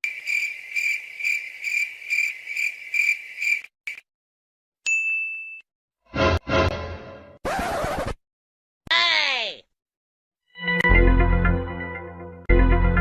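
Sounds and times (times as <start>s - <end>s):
short high ding: 4.9s - 5.6s.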